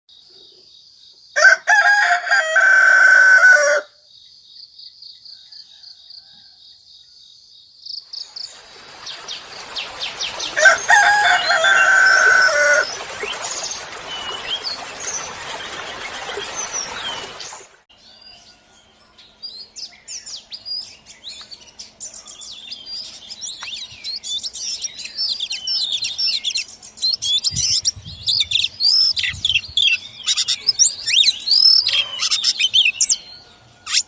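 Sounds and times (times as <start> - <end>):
rooster crowing: 1.4 - 4.0, 5.3 - 6.9, 10.4 - 13.0
songbird chirps and whistles: 18.0 - 34.0.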